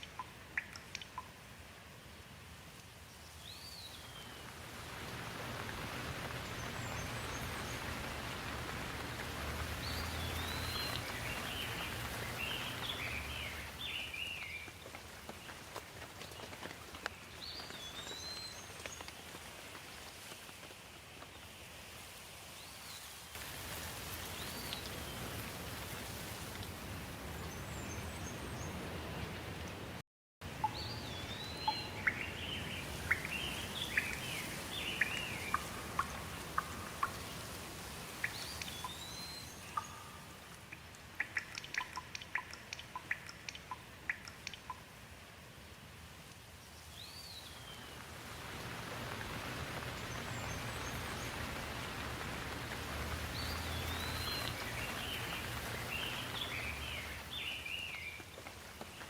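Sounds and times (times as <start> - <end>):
rain hiss: 0.0 - 59.0
songbirds calling: 3.3 - 19.3, 30.5 - 37.5, 38.1 - 44.8, 46.7 - 59.0.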